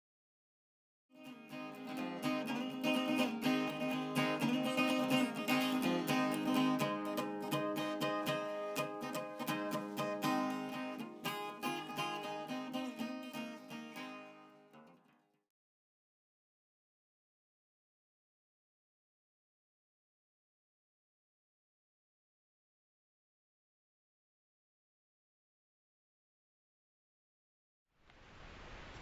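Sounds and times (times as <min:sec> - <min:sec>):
acoustic guitar strummed and picked: 0:01.2 - 0:15.0.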